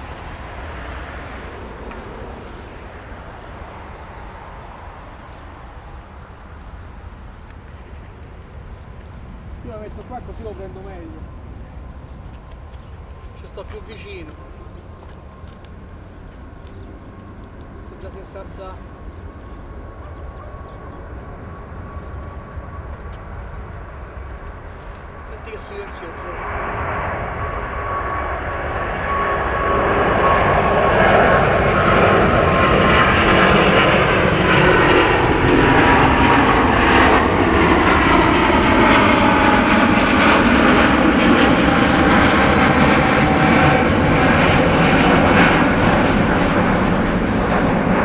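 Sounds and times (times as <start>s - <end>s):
jet engines rushing: 0.0s - 16.5s, 17.1s - 48.0s
low rumble: 28.6s - 35.2s, 41.4s - 48.0s.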